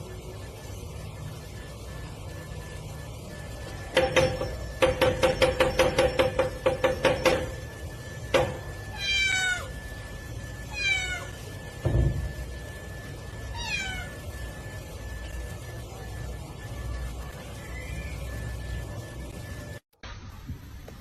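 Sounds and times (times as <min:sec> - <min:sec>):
cat meowing: 0:08.9 - 0:09.7, 0:10.7 - 0:11.4, 0:13.5 - 0:14.2
low thump: 0:11.8 - 0:12.3.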